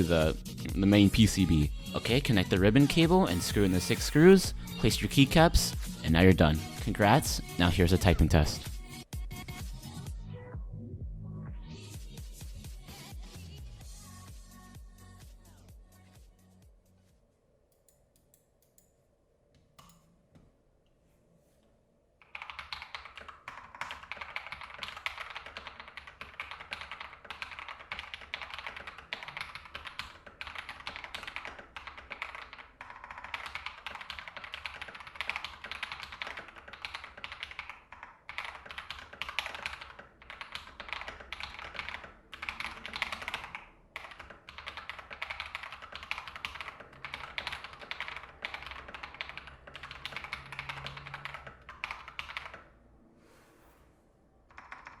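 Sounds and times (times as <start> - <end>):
fast mechanical keyboard typing: 22.2 - 52.7, 54.5 - 55.0.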